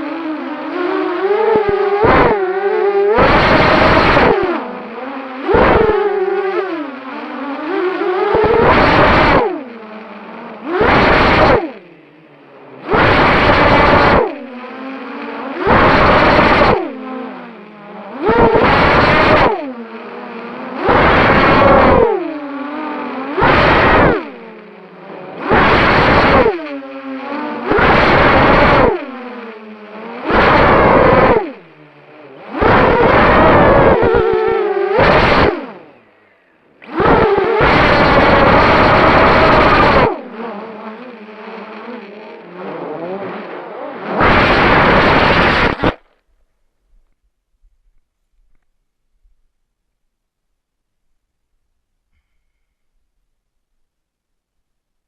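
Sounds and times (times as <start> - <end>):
drone propellers whining: 0.0 - 46.1
loud rushing noise: 43.6 - 46.0.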